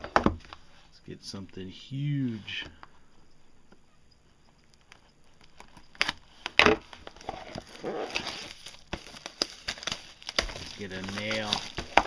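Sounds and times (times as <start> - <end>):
wrapping crinkling and rustling: 4.7 - 12.0.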